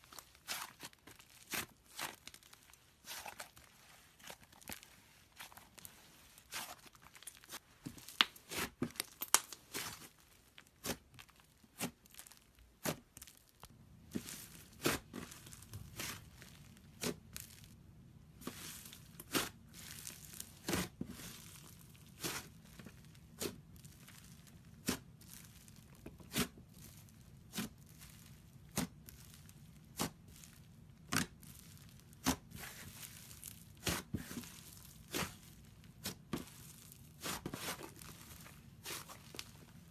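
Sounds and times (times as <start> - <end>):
slime popping and crackling: 6.5 - 10.1.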